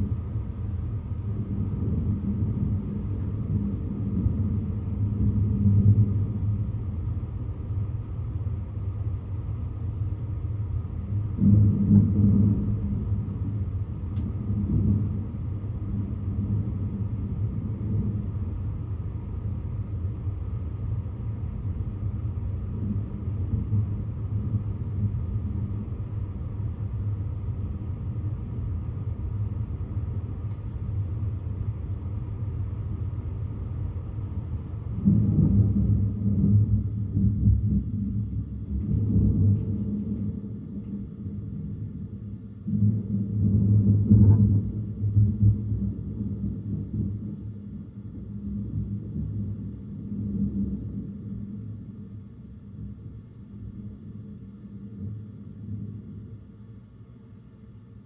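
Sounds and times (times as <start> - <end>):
rolling thunder: 11.0 - 20.3, 34.2 - 56.5.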